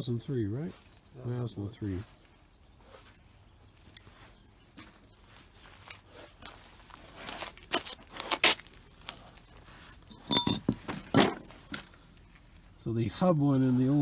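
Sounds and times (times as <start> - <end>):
tools clinking and knocking: 10.0 - 12.0.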